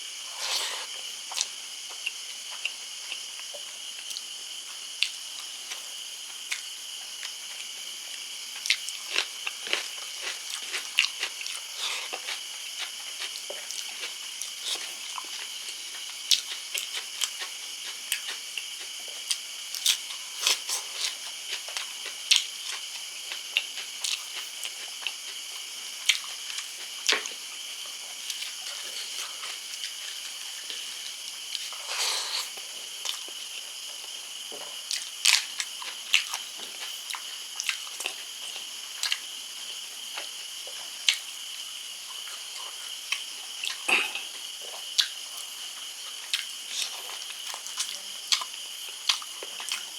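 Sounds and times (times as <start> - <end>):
steady high hiss: 0.0 - 49.9
person chewing and smacking: 8.6 - 25.4, 26.0 - 27.4, 46.2 - 49.9.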